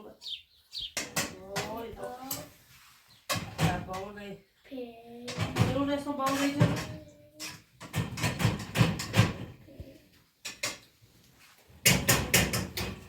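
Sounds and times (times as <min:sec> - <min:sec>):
knocks and clatters: 0:01.0 - 0:02.5, 0:05.3 - 0:09.8, 0:10.4 - 0:10.9, 0:11.8 - 0:13.0.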